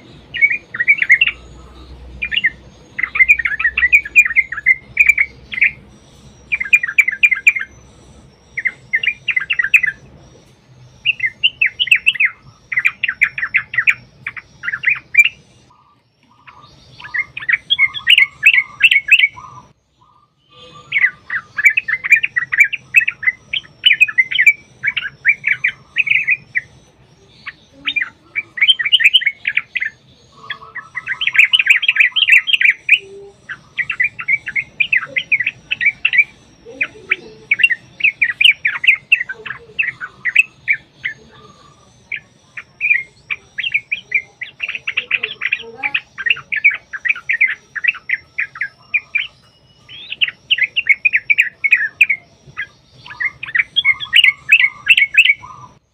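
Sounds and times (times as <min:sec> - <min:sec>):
birds chattering: 0:00.0 - 0:55.9.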